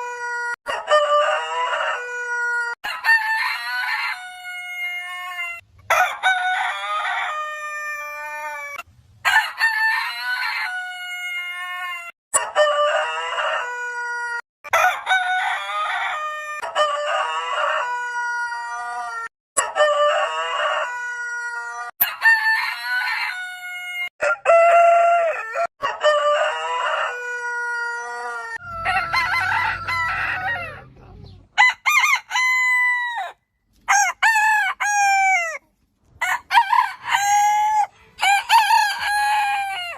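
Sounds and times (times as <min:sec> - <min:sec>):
rooster crowing: 0:00.0 - 0:35.6, 0:36.2 - 0:39.9.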